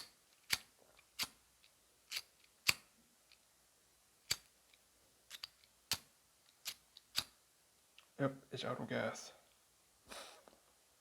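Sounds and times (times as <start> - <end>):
lighter igniter clicks: 6.6 - 7.3.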